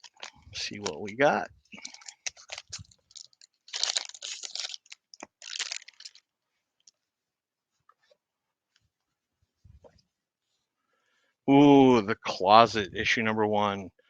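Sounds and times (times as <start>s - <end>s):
packaging crinkling and rustling: 0.0s - 6.9s.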